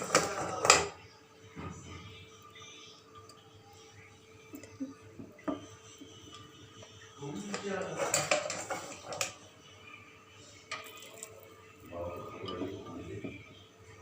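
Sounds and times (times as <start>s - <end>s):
metal spoon scraping cooking pot: 7.4s - 9.4s.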